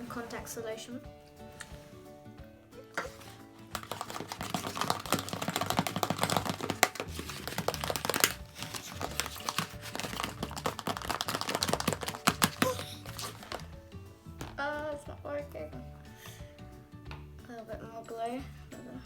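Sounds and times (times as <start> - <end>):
sticky slime clicks and crackles: 3.8 - 13.0.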